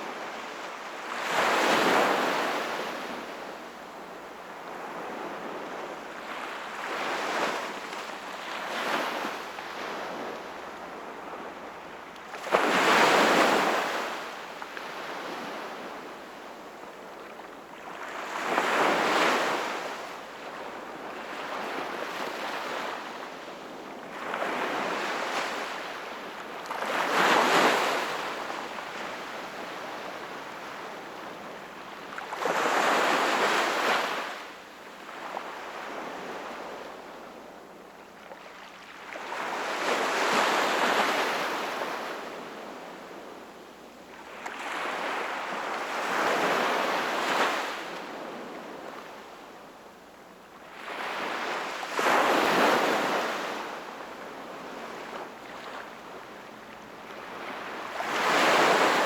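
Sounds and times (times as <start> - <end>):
waves breaking on shore: 50.8 - 59.0.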